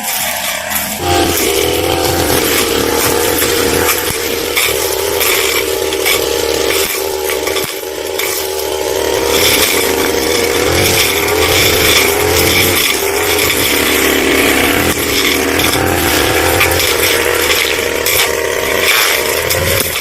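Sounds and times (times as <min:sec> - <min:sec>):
blade cutting grass: 0:00.0 - 0:20.0
brush cutter engine: 0:00.0 - 0:20.0.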